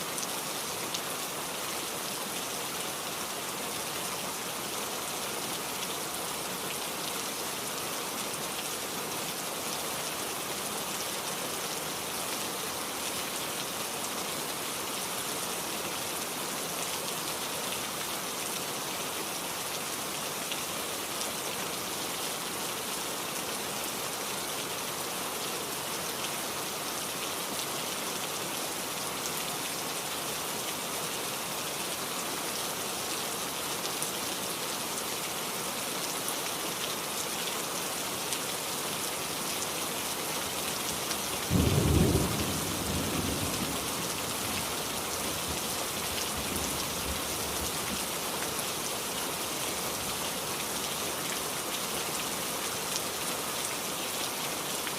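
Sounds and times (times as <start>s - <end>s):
heavy rain falling: 0.0s - 54.9s.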